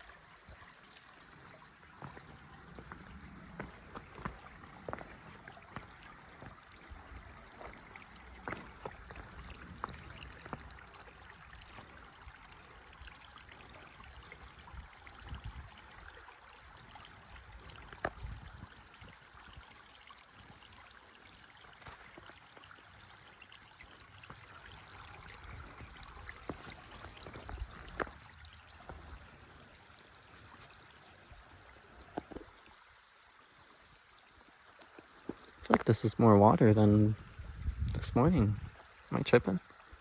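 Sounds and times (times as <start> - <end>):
creek water flowing: 0.0 - 40.0.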